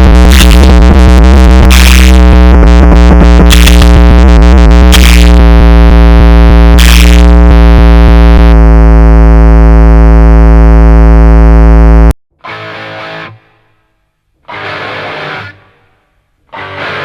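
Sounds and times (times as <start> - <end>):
loud steady electronic tone: 0.0 - 12.2.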